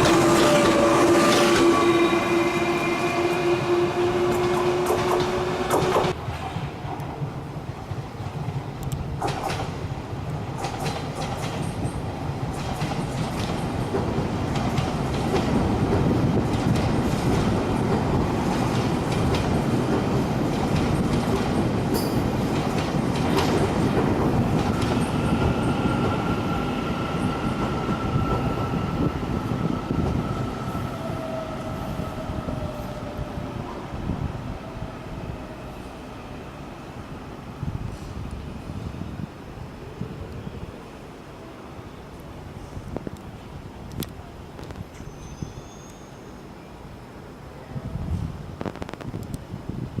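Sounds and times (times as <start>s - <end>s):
train wheels clattering on rails: 4.2s - 30.4s.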